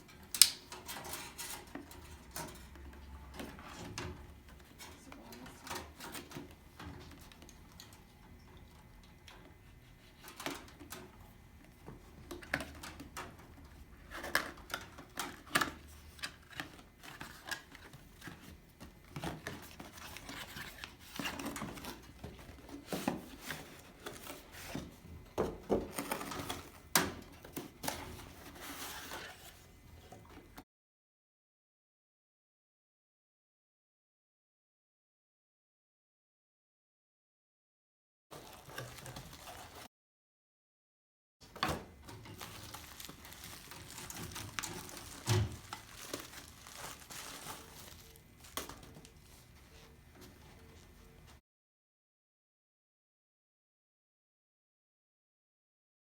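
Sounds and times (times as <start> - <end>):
handling box and packaging: 12.0 - 30.4, 38.4 - 39.9, 41.6 - 51.4.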